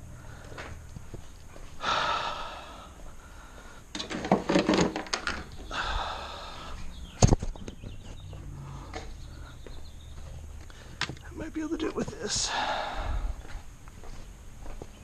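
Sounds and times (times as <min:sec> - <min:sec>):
man exhaling heavily: 0:01.8 - 0:03.8, 0:05.7 - 0:06.8, 0:12.4 - 0:13.5
plastic clicks and rattles: 0:04.0 - 0:05.5.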